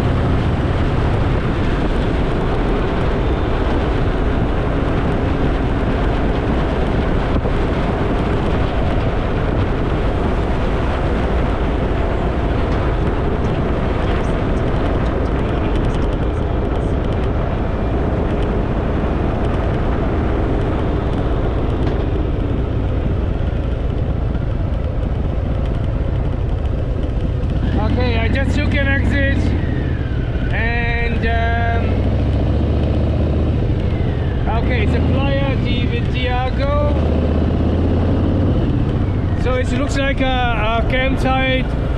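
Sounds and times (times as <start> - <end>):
motorcycle engine rumbling: 0.0 - 41.9.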